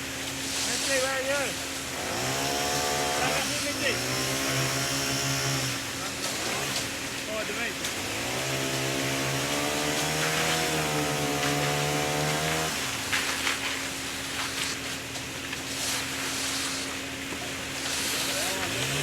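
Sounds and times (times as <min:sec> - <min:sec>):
engine revving: 0:02.0 - 0:06.9, 0:07.9 - 0:12.9, 0:18.3 - 0:19.0.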